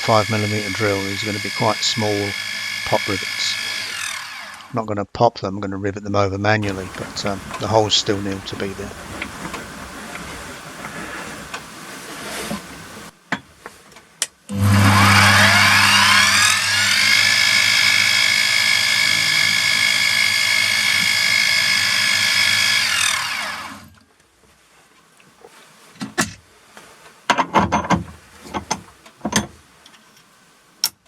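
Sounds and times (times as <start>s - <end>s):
milling machine motor whining: 0.0s - 4.8s, 6.6s - 8.8s, 14.5s - 24.0s.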